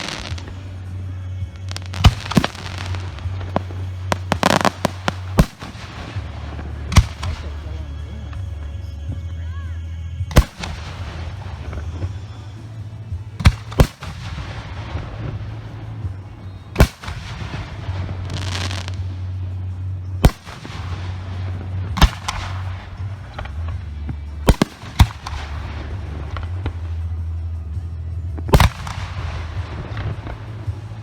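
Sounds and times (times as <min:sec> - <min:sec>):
steady low rumble: 0:00.0 - 0:31.0
firework shells bursting: 0:01.6 - 0:08.6, 0:10.3 - 0:12.7.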